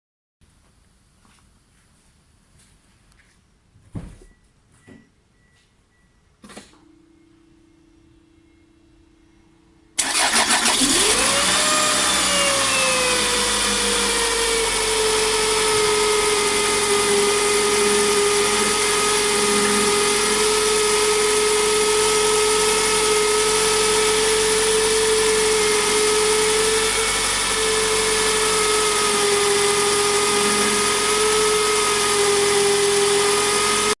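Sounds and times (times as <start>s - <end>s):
engine idling with loud whine: 10.0s - 33.9s
car engine cranking and starting: 10.0s - 34.0s.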